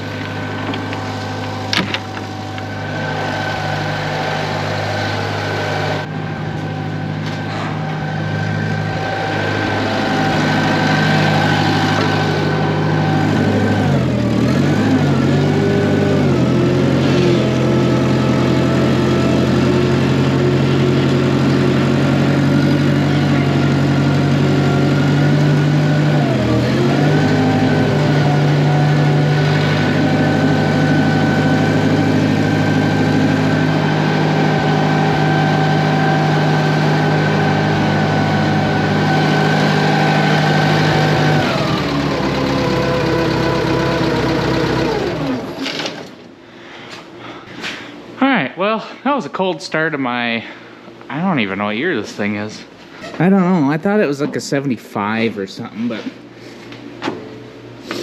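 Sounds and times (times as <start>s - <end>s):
engine idling: 0.0s - 46.2s.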